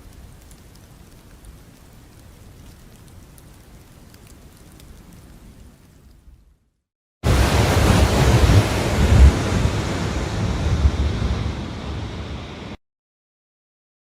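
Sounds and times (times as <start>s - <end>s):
loud rushing with low rumble: 7.3s - 12.8s.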